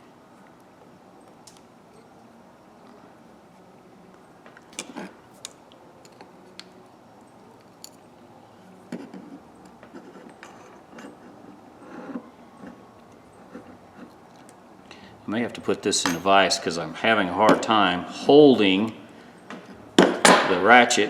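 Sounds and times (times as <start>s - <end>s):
metal parts rattling: 16.0s - 16.6s.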